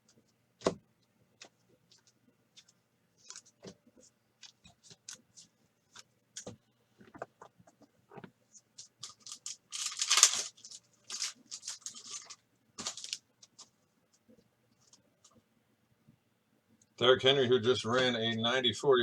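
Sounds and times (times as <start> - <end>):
foil wrapper crinkling: 8.8 - 13.7.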